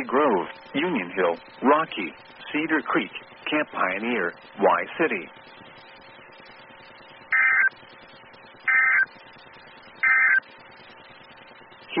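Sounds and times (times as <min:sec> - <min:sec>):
faint radio hiss: 0:00.0 - 0:12.0
digital data tone bursts: 0:07.3 - 0:07.9, 0:08.6 - 0:11.2.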